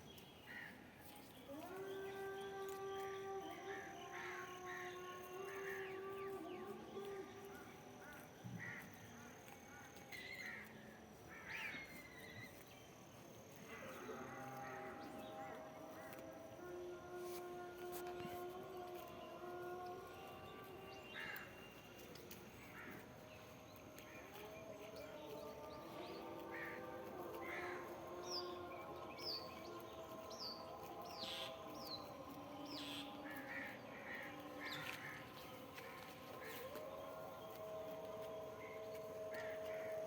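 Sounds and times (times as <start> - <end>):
crows cawing: 0.5 - 0.8, 3.8 - 5.9, 8.0 - 11.9, 21.1 - 21.6, 22.6 - 23.1, 26.4 - 28.6, 32.7 - 36.6, 38.6 - 40.0
small birds chirping: 20.2 - 40.0.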